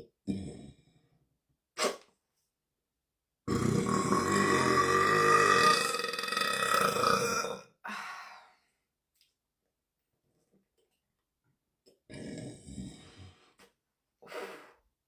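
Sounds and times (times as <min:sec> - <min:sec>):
woman burping: 0:03.5 - 0:07.6.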